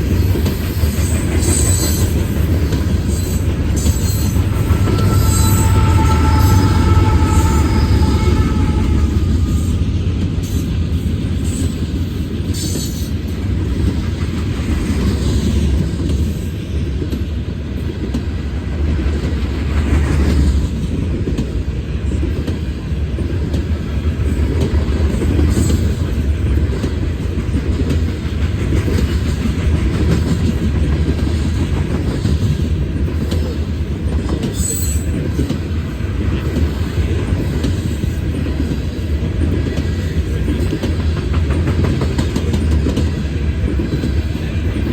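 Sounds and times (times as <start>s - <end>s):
freight train rumbling past: 0.0s - 44.9s
high wheel squeaks: 3.0s - 10.7s.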